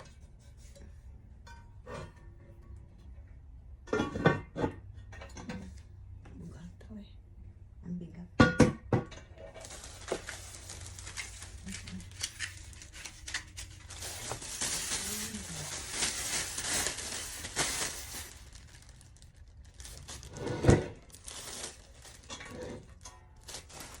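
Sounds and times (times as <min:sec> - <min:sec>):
packaging crinkling and rustling: 0:09.5 - 0:24.0.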